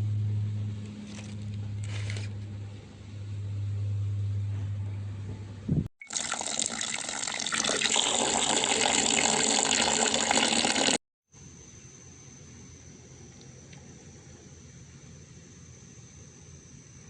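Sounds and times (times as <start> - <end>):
tap water running into sink: 6.0 - 11.0.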